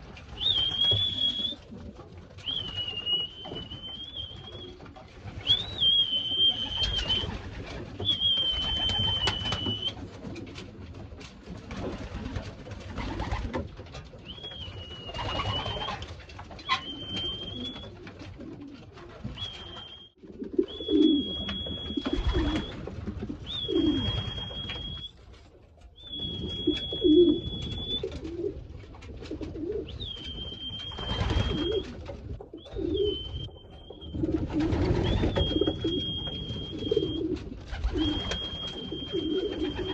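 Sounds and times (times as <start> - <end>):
high whistle notes: 0.4 - 1.6, 23.5 - 25.1, 26.0 - 28.1
pigeons cooing: 14.2 - 25.0, 26.0 - 39.9.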